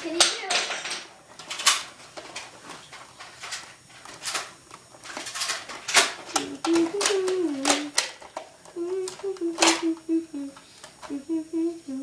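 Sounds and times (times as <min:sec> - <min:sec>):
person humming: 0:06.3 - 0:08.0, 0:08.7 - 0:12.0
toy blaster clicks and snaps: 0:09.1 - 0:09.9.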